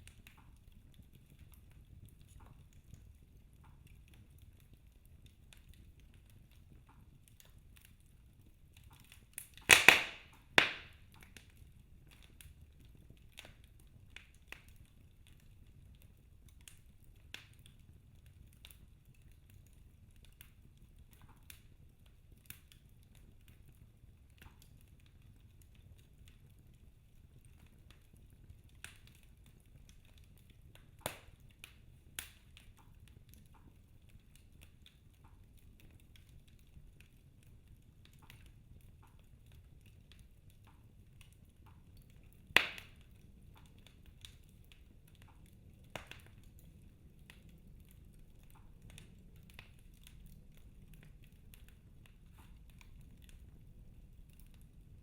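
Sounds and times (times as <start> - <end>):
wood fire crackling: 0.0 - 55.0
sharp pops of fire: 8.8 - 12.6, 29.9 - 33.7, 41.7 - 46.6.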